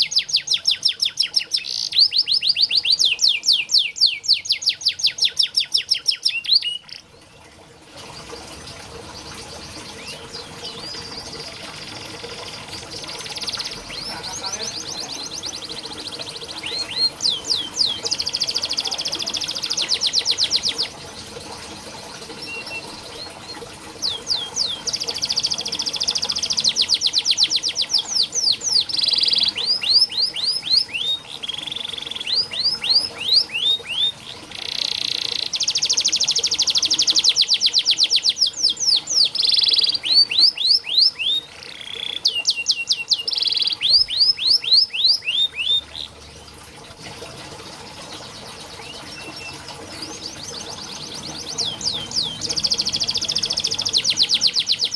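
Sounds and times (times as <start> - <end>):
canary singing trills: 0.0 - 7.3, 8.1 - 46.2, 48.2 - 54.9.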